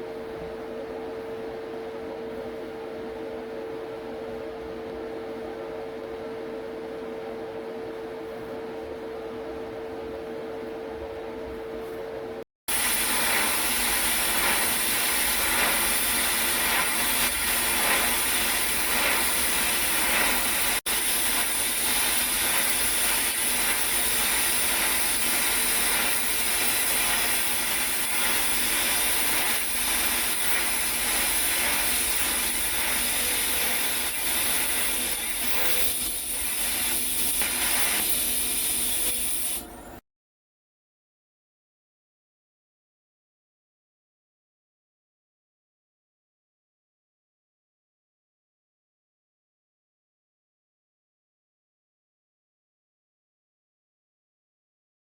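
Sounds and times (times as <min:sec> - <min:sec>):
welding arc hissing: 0:12.7 - 0:39.8.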